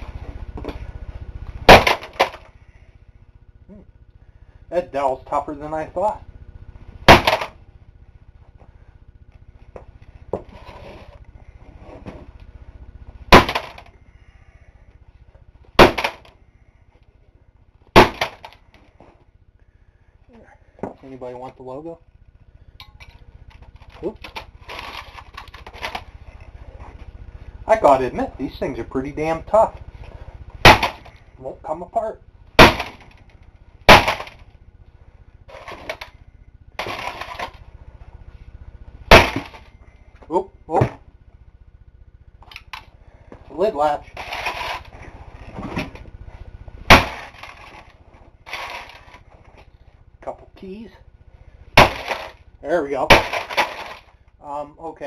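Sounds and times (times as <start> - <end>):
sledgehammer blow on plastic: 1.6 - 2.5, 7.0 - 7.6, 13.3 - 13.8, 17.9 - 18.5, 30.6 - 31.2, 32.6 - 33.2, 33.9 - 34.4, 39.1 - 39.7, 46.8 - 47.8
breaking parts clattering: 7.1 - 7.6, 13.3 - 13.9, 22.8 - 26.2, 32.6 - 34.5, 35.5 - 36.2, 36.8 - 37.6, 39.1 - 39.7, 44.1 - 46.0, 46.9 - 49.4, 51.8 - 52.4, 53.1 - 54.2.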